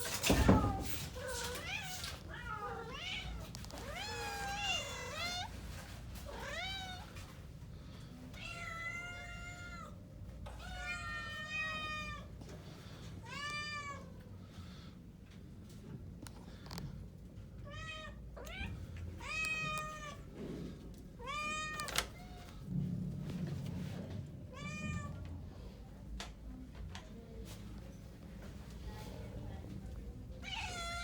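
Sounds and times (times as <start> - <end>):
cats meowing: 0.0 - 7.3, 8.4 - 12.3, 13.2 - 14.2, 17.6 - 20.3, 21.2 - 22.7, 30.4 - 31.0.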